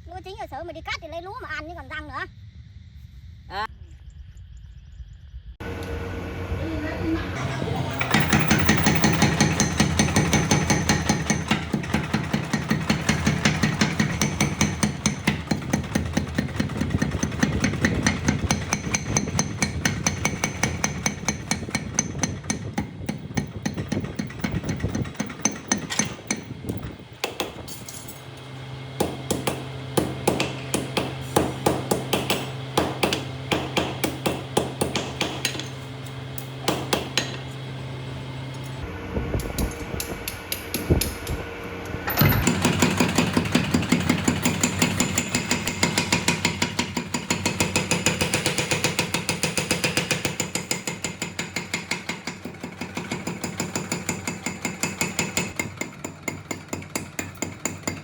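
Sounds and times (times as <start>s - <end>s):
steady low hum: 0.0s - 47.2s
hammering on metal: 7.8s - 27.9s, 29.0s - 35.8s, 36.4s - 37.5s, 42.4s - 58.0s.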